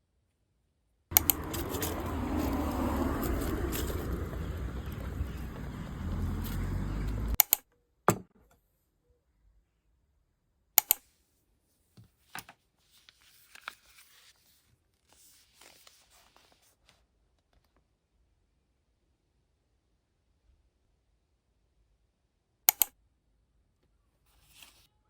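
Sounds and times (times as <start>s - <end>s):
low outdoor rumble: 1.1s - 7.4s.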